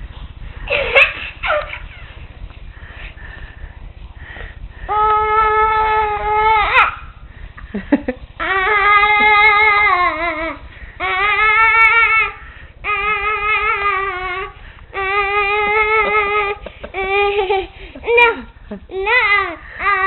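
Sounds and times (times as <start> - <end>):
child making wavering oooo tones: 4.9 - 7.0, 8.4 - 17.5, 18.2 - 20.0.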